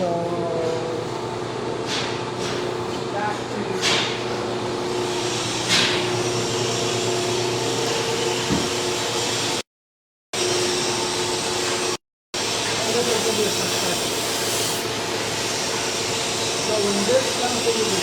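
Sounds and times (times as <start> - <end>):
constant machine hum: 0.0 - 9.6.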